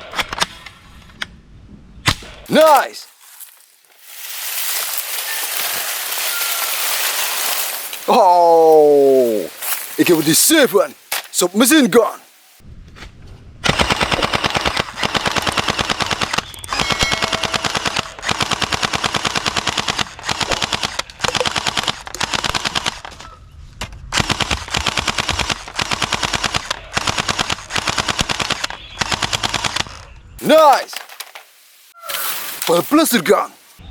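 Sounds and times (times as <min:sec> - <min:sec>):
toy gun firing automatic bursts: 0:13.7 - 0:23.0, 0:24.2 - 0:30.1.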